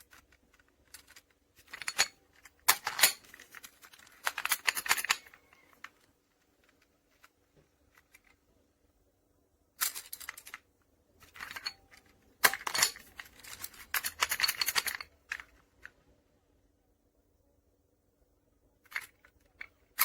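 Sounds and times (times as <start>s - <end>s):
metal lock and keys rattling: 0.1s - 5.8s, 9.8s - 10.6s, 11.2s - 15.5s.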